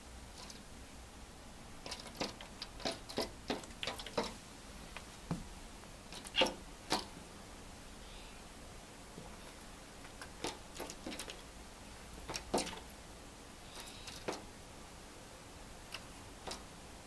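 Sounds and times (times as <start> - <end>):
light irregular taps: 1.9 - 5.5.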